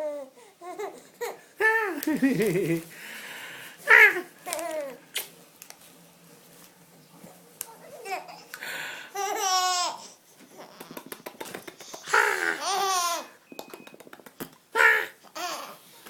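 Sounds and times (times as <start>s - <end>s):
baby laughing: 3.9s - 5.0s, 9.1s - 13.4s, 14.8s - 15.8s.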